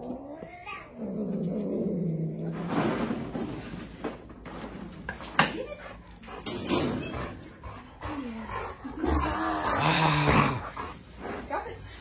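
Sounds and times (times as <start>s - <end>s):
dog grumbling and moaning: 0.0s - 3.5s, 5.9s - 11.4s.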